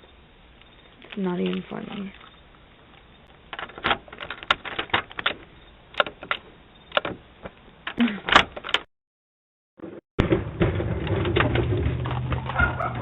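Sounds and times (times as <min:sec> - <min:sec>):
irregular sharp clicks and knocks: 0:03.2 - 0:08.9.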